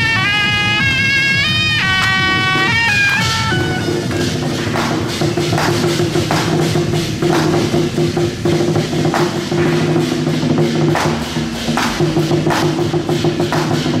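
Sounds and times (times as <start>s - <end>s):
held steady tones: 0.0s - 8.4s
cymbal crashes: 0.0s - 14.0s
drums: 0.0s - 14.0s.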